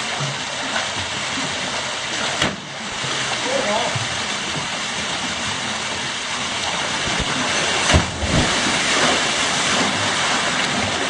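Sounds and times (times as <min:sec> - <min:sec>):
waterfall rushing over rock: 0:00.0 - 0:11.0
loud thump: 0:07.9 - 0:08.8.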